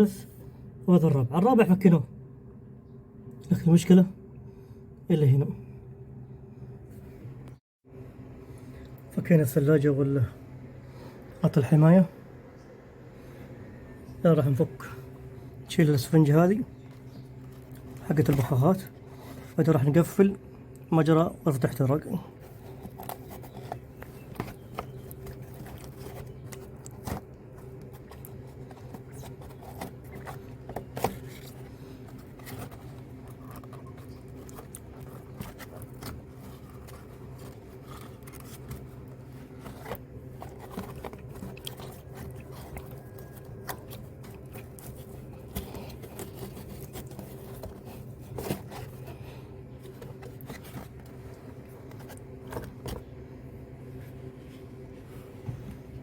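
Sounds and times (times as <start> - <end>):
low background hum: 0.0 - 56.0
plastic and foam clicks and scrapes: 22.4 - 53.2.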